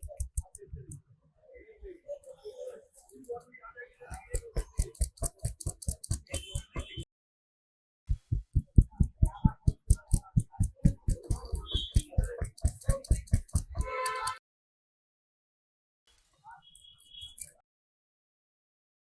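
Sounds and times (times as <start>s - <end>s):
hands slapping and tapping head: 8.1s - 14.3s.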